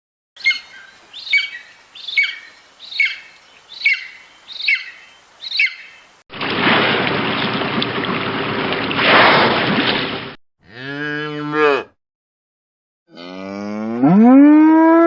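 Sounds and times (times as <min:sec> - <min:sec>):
cattle mooing: 0:10.6 - 0:12.0, 0:13.1 - 0:15.0.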